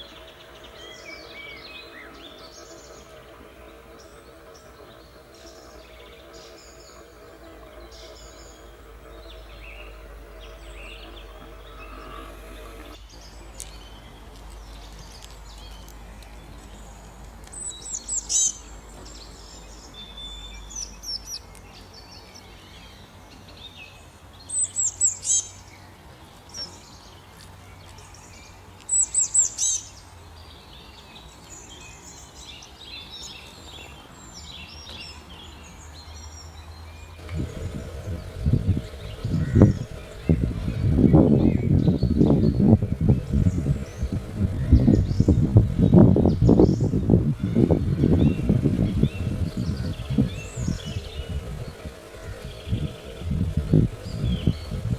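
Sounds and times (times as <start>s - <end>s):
soft bird twittering: 0.0s - 16.9s, 31.9s - 54.9s
faint steady hiss: 0.0s - 30.3s, 37.2s - 54.9s.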